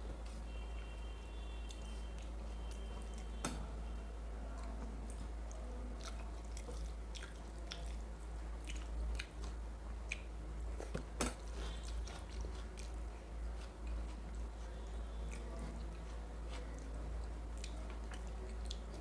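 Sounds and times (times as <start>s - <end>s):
close chewing mouth clicks: 4.6s - 19.0s.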